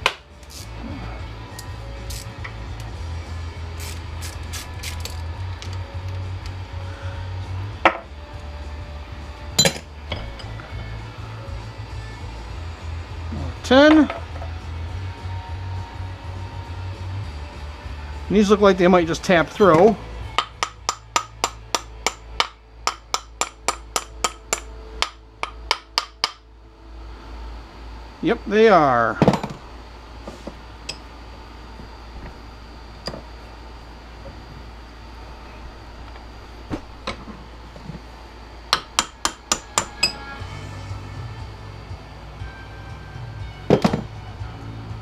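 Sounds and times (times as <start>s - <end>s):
background music: 0.0s - 27.0s, 38.8s - 45.0s
ratchet clicking: 2.1s - 2.3s, 3.8s - 5.2s
hammer striking metal: 19.6s - 26.4s, 38.7s - 40.4s.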